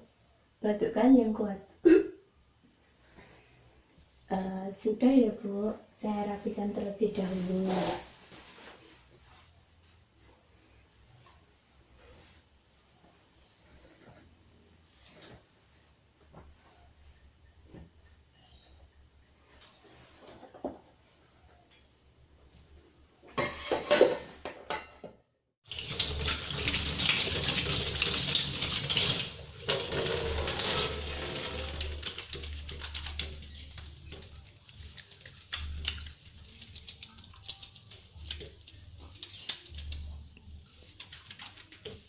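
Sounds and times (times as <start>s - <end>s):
tap water running into sink: 25.6s - 36.2s.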